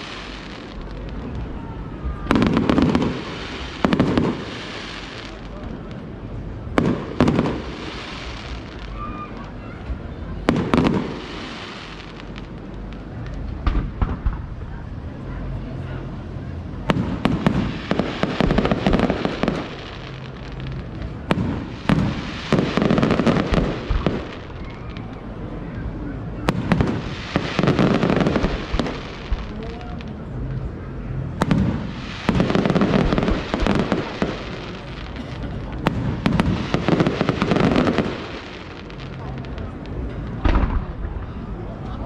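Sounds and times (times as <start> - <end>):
rapid firework pops: 12.0 - 14.7, 16.9 - 25.3, 31.4 - 41.1.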